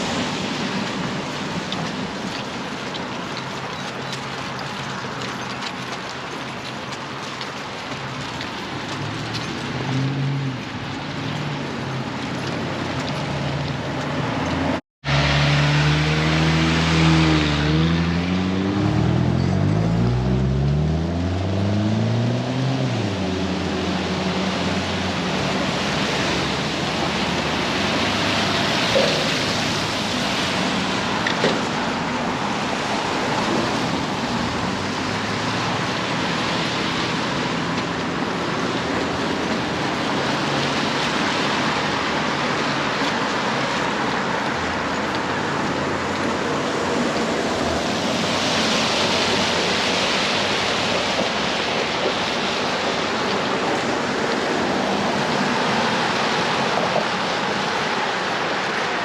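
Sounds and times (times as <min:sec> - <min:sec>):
road and tyre noise: 0:00.0 - 0:59.0
car engine accelerating: 0:14.5 - 0:25.9.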